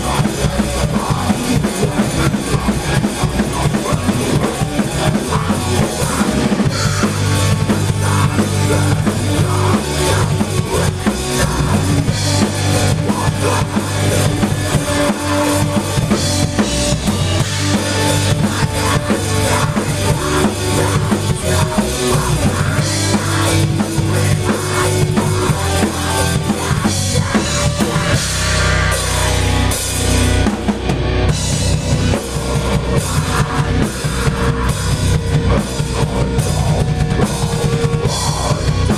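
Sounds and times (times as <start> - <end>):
drum kit: 0.0 - 38.9
low bass notes: 0.0 - 38.9
rock band playing: 0.0 - 38.9.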